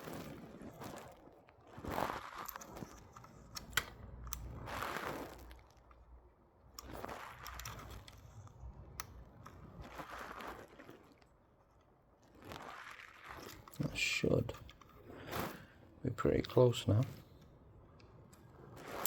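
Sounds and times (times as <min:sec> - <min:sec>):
soft plastic scrape: 0:00.0 - 0:06.1, 0:06.7 - 0:17.5
plastic parts clicking: 0:02.4 - 0:04.5.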